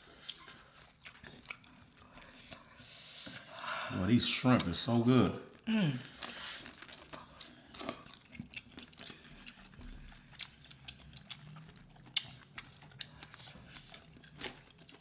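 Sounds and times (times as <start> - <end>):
person chewing: 0.0 - 3.4, 6.0 - 15.0.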